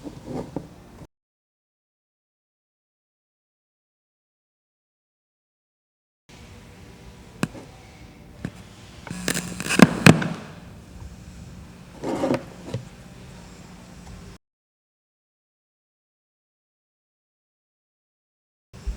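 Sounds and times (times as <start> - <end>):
steady low hiss: 6.3 - 14.4.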